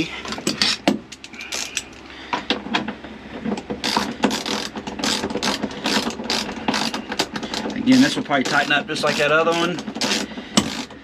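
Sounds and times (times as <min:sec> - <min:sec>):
ratchet wrench clicking: 0:03.8 - 0:11.0.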